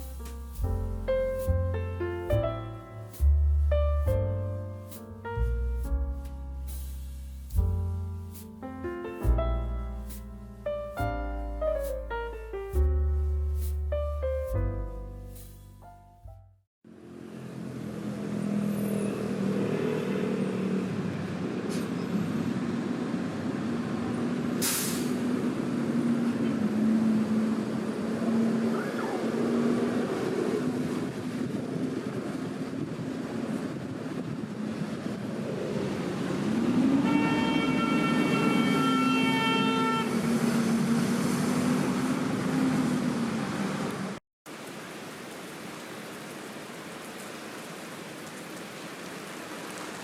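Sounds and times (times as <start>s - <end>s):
subway train rumbling: 17.0s - 44.2s
horn-like tone: 37.0s - 40.4s.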